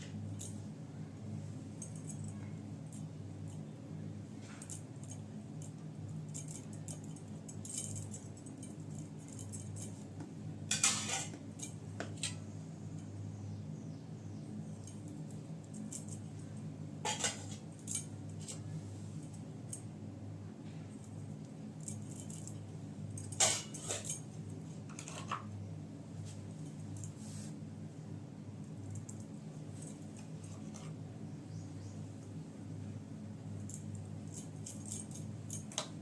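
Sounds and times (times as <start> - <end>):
steady low hum: 0.0 - 36.0
kitchen utensils clinking: 10.7 - 11.4, 17.1 - 17.7, 23.3 - 24.2.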